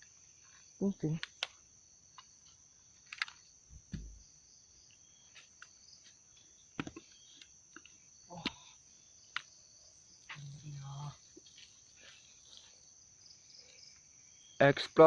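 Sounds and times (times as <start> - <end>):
cricket chorus chirring: 0.0 - 15.0
rustles and knocks: 3.1 - 4.2.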